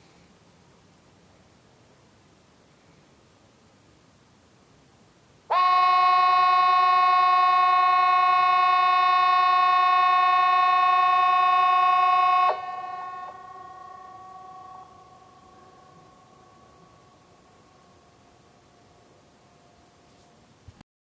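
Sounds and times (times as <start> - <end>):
two-pitch warning siren: 5.5 - 20.0
faint lingering tone: 11.7 - 20.3.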